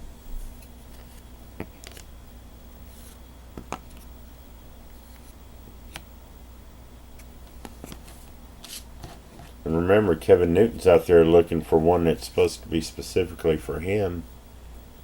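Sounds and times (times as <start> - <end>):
steady low hum: 0.0 - 15.0
cards clicking and sliding: 0.5 - 2.1, 4.9 - 6.1, 7.2 - 9.2.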